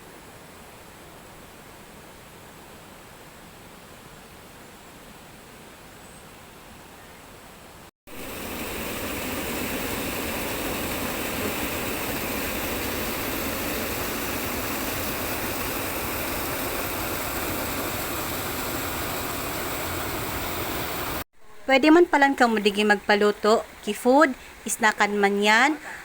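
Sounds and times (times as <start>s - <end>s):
running water: 8.1s - 26.0s.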